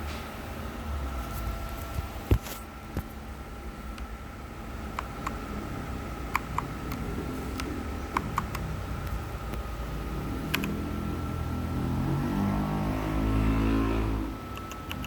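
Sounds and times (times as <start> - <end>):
steady hum with high tone: 0.0 - 15.0
mechanical keyboard key clicks: 10.5 - 10.8, 14.6 - 15.0.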